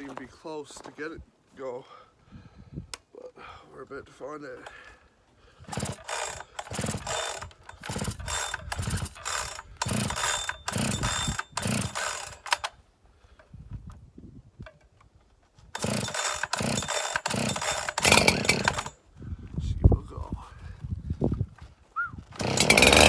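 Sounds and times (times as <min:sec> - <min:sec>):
chainsaw pull-starter rope whirring: 0:05.6 - 0:12.8, 0:15.7 - 0:19.0, 0:22.3 - 0:23.0.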